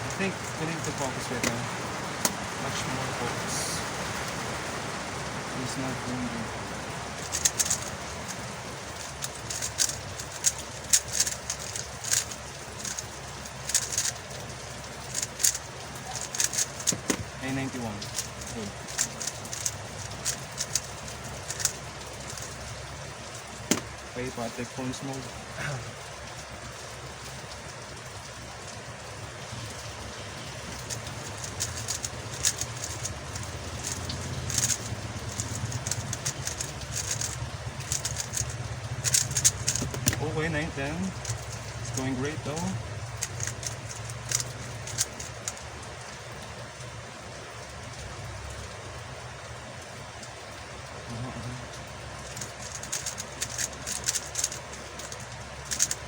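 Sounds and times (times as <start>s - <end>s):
steady low hum: 0.0s - 56.0s
puzzle cube plastic clicks: 7.2s - 22.8s, 23.6s - 24.0s, 30.6s - 40.4s, 41.1s - 45.7s, 52.2s - 56.0s.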